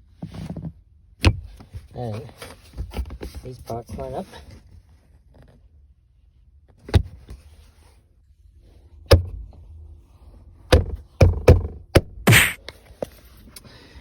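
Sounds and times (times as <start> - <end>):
plastic trim knocking and clicking: 10.7 - 12.1.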